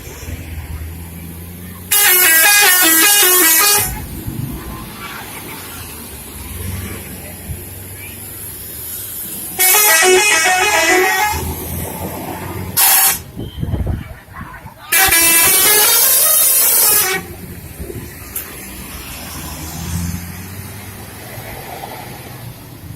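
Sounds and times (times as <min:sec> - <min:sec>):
bus engine running: 0:00.0 - 0:22.9
musical air horn tune: 0:01.9 - 0:04.1, 0:09.6 - 0:11.6, 0:12.8 - 0:13.3, 0:14.9 - 0:17.4.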